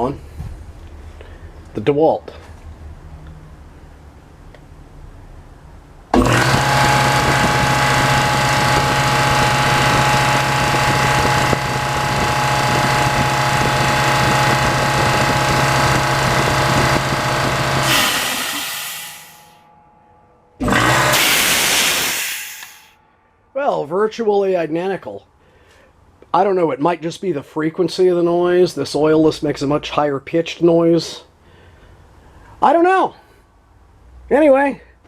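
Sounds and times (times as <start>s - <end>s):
air compressor humming: 6.1s - 19.7s, 20.6s - 23.0s
air hiss: 17.8s - 19.6s, 21.1s - 22.9s.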